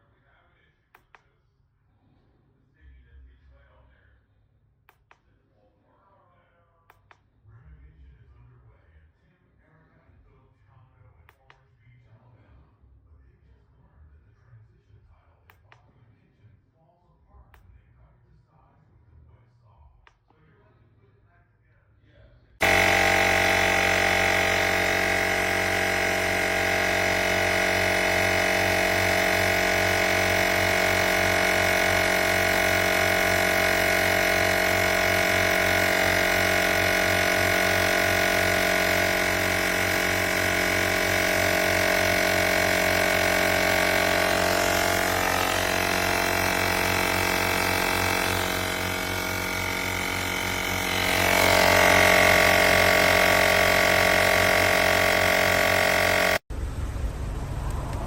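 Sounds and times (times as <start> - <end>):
air compressor running: 22.6 - 58.0.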